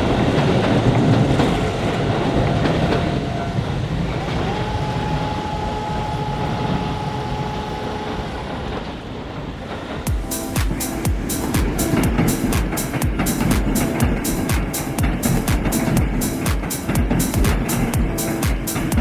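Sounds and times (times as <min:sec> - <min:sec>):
train rumbling past: 0:00.0 - 0:19.0
music: 0:10.1 - 0:19.0
steady whine: 0:10.1 - 0:19.0.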